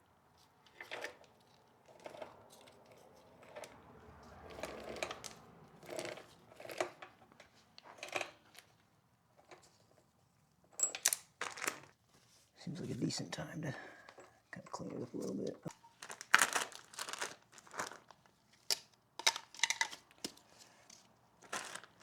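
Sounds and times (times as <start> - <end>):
parts and tools rustling and clattering: 0.2 - 12.5, 14.0 - 22.0.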